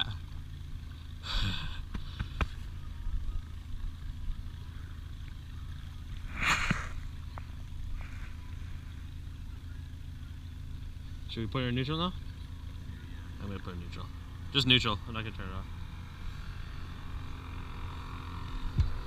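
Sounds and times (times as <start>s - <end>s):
boat motor humming: 0.0s - 19.0s
brief noisy rustles: 6.3s - 7.0s.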